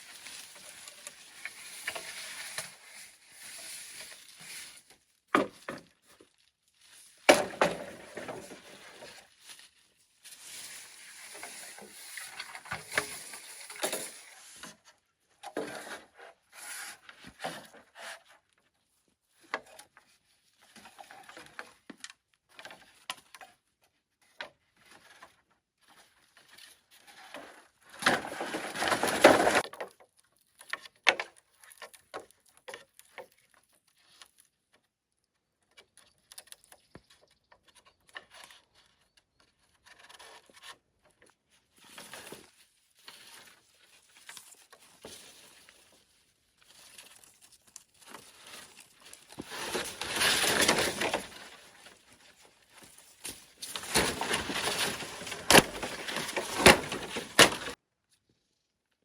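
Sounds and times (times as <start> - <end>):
bamboo knocks and scrapes: 0.0 - 6.3, 7.1 - 9.7, 10.4 - 18.4, 24.8 - 29.9, 46.7 - 57.8.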